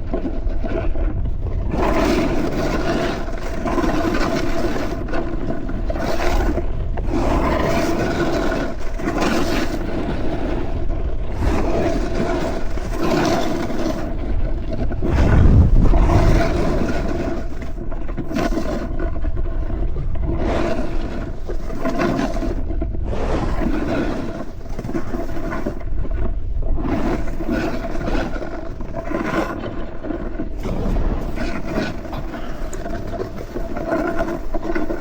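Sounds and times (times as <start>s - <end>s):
wind on microphone: 9.8s - 35.0s
snowboard scraping over snow: 11.3s - 19.0s.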